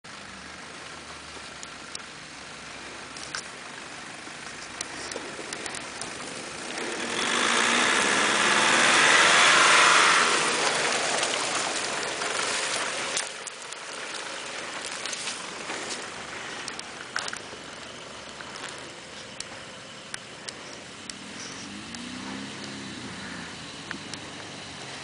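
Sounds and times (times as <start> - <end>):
off-road vehicle driving past: 2.4 - 25.0.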